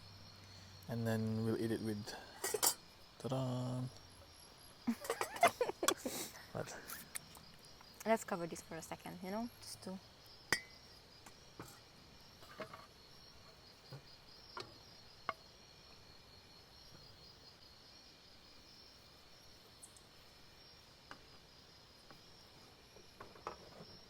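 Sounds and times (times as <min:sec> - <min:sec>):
crickets chirping: 0:00.0 - 0:24.0
metal clink ringing: 0:02.4 - 0:02.8.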